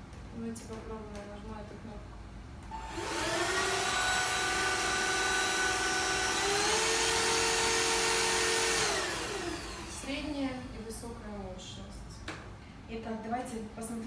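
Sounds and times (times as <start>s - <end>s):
stick vacuum motor whine: 2.7s - 10.8s.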